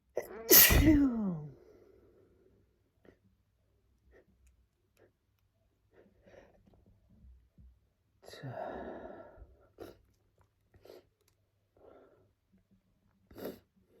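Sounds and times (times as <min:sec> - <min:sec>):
man sneezing: 0:00.4 - 0:01.2.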